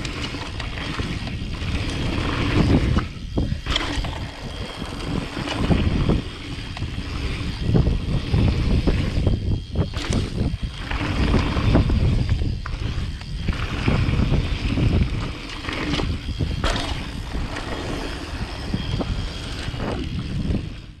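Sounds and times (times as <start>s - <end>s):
tyres rumbling over dirt and rocks: 0.0s - 9.1s
wind buffeting microphone: 0.0s - 21.0s
bike knocks and rattles: 14.8s - 18.2s.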